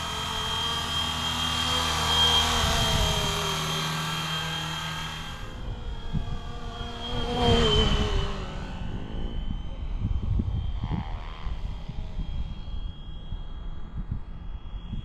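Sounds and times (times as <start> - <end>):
helicopter rotor tone: 0.0 - 15.0
rc helicopter motor whine: 0.0 - 15.0
wind buffeting microphone: 5.3 - 15.0.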